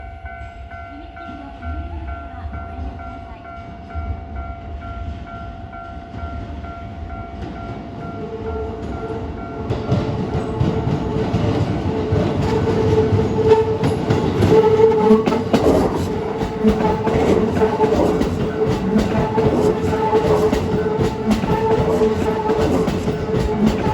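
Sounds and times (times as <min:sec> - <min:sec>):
electric train passing: 0:00.0 - 0:23.9
level-crossing warning bell: 0:00.0 - 0:23.9
wheels clicking over rail joints: 0:07.4 - 0:23.9.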